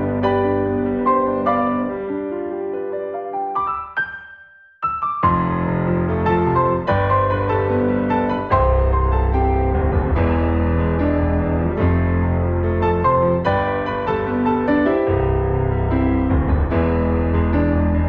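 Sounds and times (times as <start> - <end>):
slow piano music: 0.0 - 18.0.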